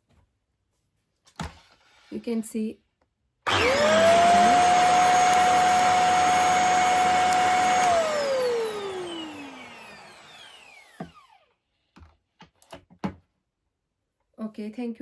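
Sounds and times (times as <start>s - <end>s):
vacuum cleaner motor whine: 3.5s - 11.5s.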